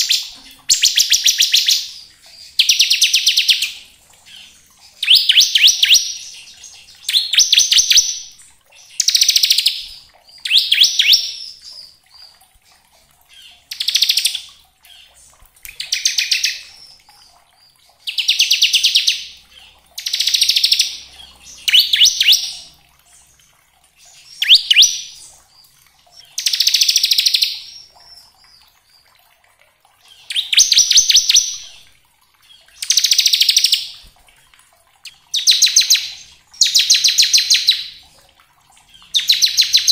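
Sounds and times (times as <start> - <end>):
bird singing rattling trills: 0.0 - 15.2, 15.8 - 25.4, 30.0 - 31.8.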